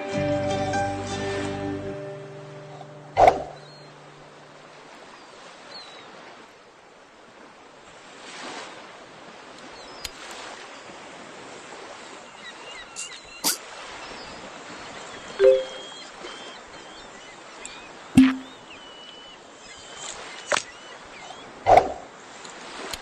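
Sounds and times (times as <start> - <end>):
surf washing: 1.1 - 23.0
faint short chirps: 15.4 - 16.0.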